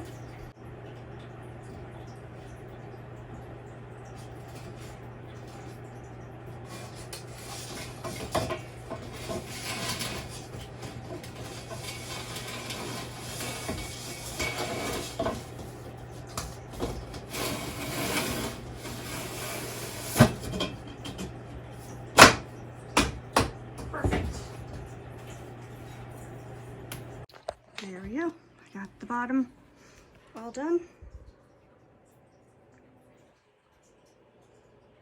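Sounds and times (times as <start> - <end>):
panel scraping in wooden tracks: 6.7 - 15.8, 16.8 - 20.5.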